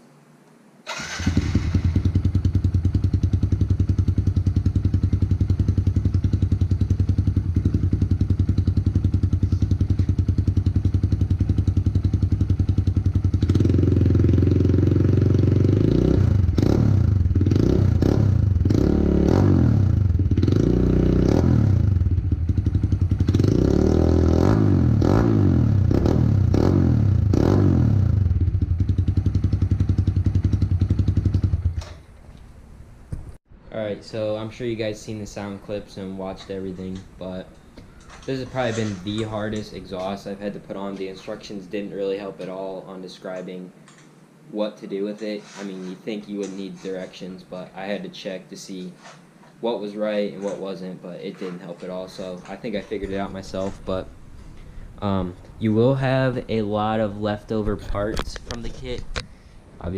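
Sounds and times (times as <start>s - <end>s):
small motorcycle engine revving: 0.9s - 31.9s.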